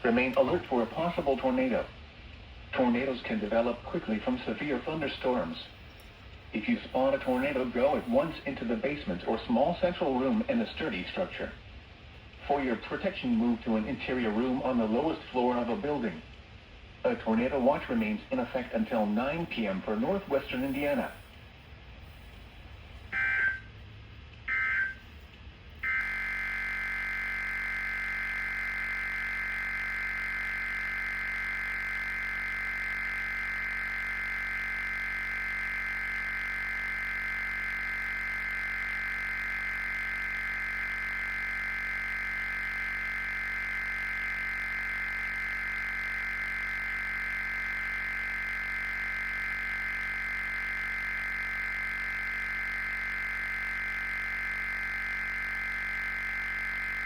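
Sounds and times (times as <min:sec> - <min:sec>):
two-pitch data tone buzz: 0:07.0 - 0:08.4, 0:17.6 - 0:21.4, 0:23.0 - 0:23.8, 0:24.5 - 0:25.2, 0:25.8 - 0:57.0.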